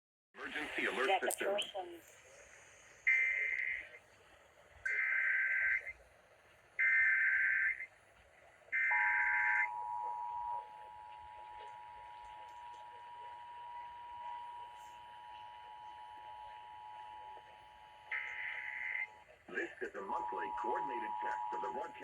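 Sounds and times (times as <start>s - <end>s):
two-tone attention signal: 8.8s - 19.1s, 20.0s - 22.0s
warbling digital data tones: 20.0s - 22.0s.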